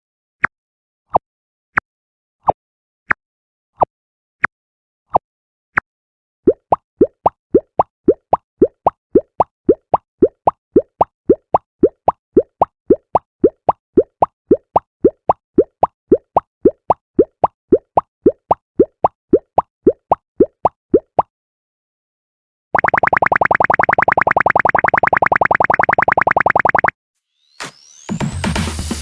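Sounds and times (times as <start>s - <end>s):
cartoon walking plops: 6.5s - 21.3s, 22.8s - 26.9s.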